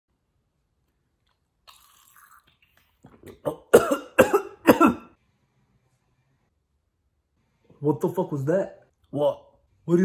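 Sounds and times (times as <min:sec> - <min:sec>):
man coughing: 0:03.4 - 0:05.1.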